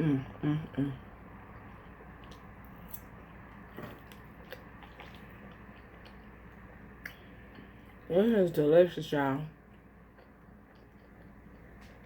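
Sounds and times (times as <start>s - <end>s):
quiet chewing: 1.4s - 8.0s, 9.6s - 12.0s.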